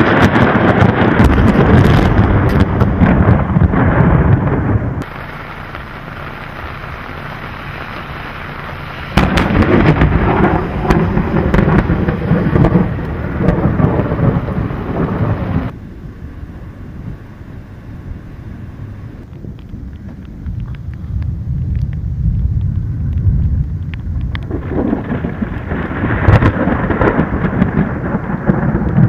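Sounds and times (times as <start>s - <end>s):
crack of thunder: 0.0s - 5.2s, 9.1s - 15.8s, 21.6s - 29.0s
steady rain: 0.0s - 29.0s
thunder rumbling: 0.0s - 29.0s.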